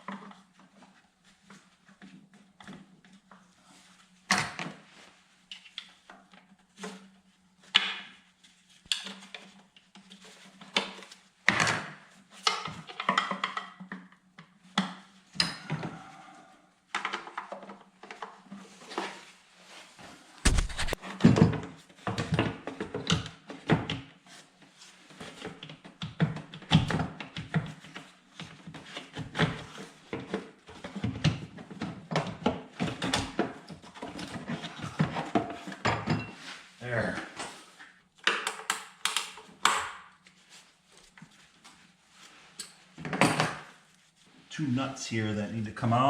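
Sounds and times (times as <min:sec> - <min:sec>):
heavy thumps: 0:20.5 - 0:21.0.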